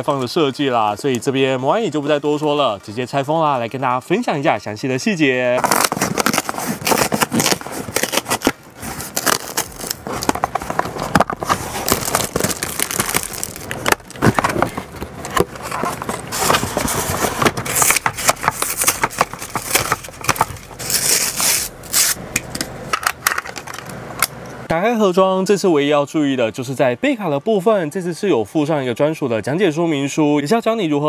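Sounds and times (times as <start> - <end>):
packaging crackling and rustling: 5.6 - 24.0.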